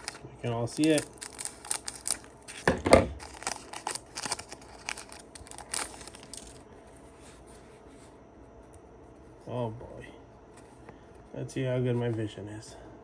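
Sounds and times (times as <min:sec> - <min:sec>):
foil wrapper tearing and crinkling: 0:00.0 - 0:06.6.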